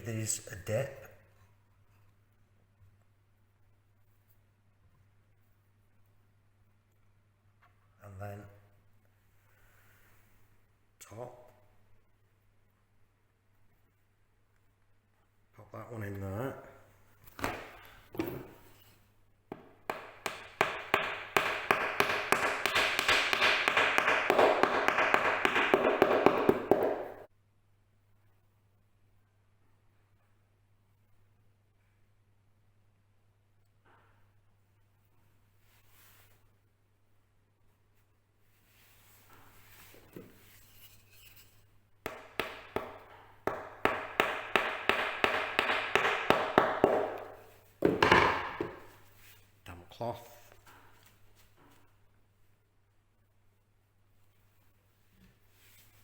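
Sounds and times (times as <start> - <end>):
hammer tapping wooden dowel: 19.5 - 27.3, 42.1 - 49.0.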